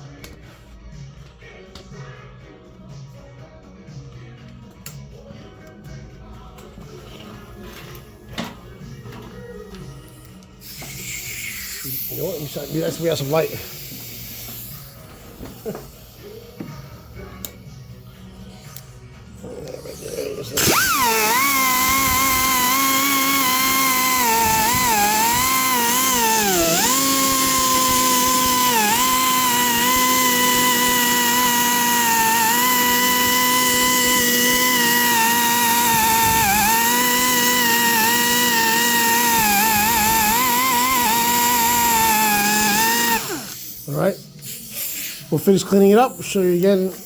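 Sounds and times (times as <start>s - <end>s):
electric grinder whining on metal: 20.1s - 43.6s.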